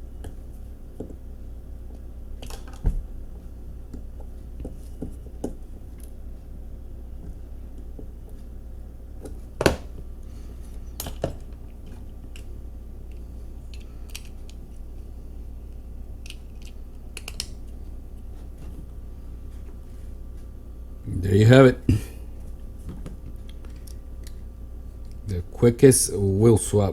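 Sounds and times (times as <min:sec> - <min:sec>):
steady low hum: 0:00.0 - 0:26.9
clicks and taps of small parts: 0:13.1 - 0:14.6, 0:16.2 - 0:17.6.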